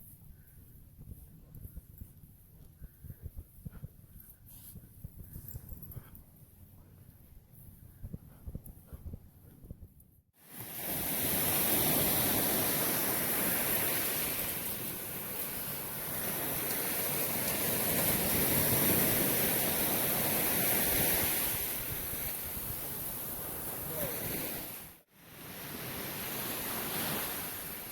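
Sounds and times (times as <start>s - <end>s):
wind noise on microphone: 0.0s - 6.4s, 7.2s - 14.7s, 16.2s - 23.7s
ocean surf washing in: 10.4s - 27.9s.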